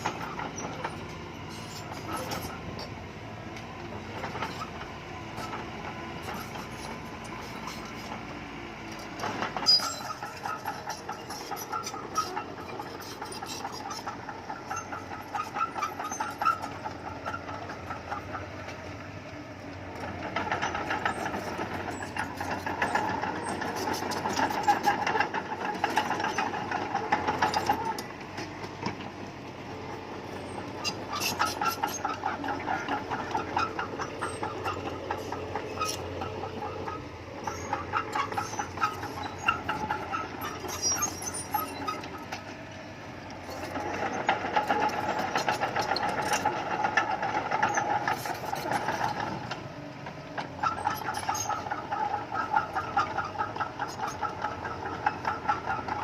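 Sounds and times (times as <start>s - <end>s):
steel tracks clanking and squealing: 0.0s - 29.2s, 29.8s - 56.0s
bulldozer diesel engine: 0.0s - 56.0s.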